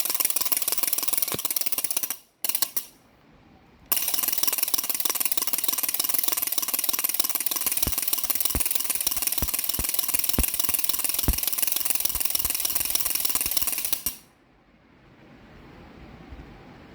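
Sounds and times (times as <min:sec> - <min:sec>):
baby rattle shaking: 0:04.0 - 0:14.2.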